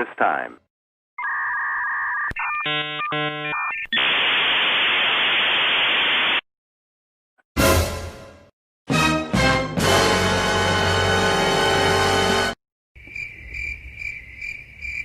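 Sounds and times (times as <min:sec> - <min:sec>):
buzzy electronic beeps: 0:01.2 - 0:03.8
modem two-note tone: 0:02.4 - 0:03.8
hissing static: 0:04.0 - 0:06.4.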